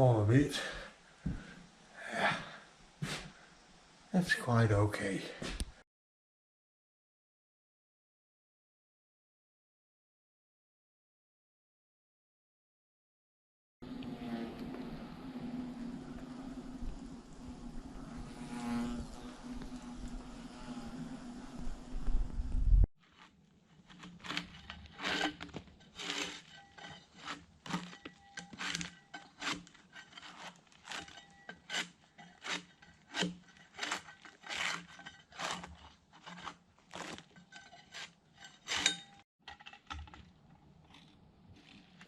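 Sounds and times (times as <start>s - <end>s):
hand tool rasping on wood: 23.1s - 39.2s.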